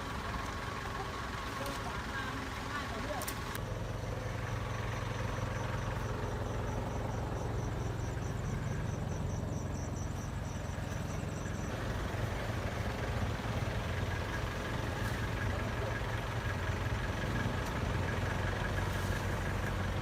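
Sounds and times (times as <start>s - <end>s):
low engine rumble: 0.0s - 20.0s
rapid high-pitched pulsing chirp: 3.9s - 11.8s.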